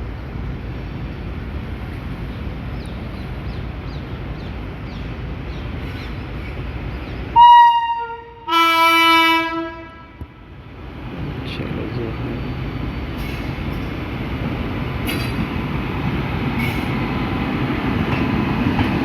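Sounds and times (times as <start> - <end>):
locomotive air horn: 7.4 - 10.2.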